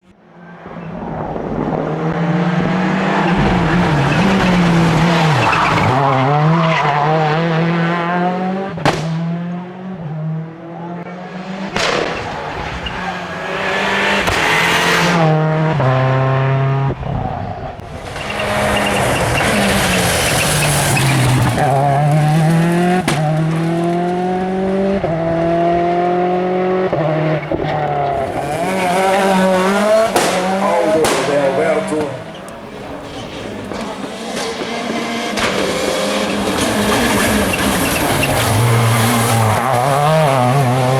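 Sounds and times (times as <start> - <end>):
rally car engine revving: 0.1 - 40.9
sharp cracks: 8.8 - 9.2, 11.7 - 13.1, 14.1 - 14.8, 29.6 - 32.6.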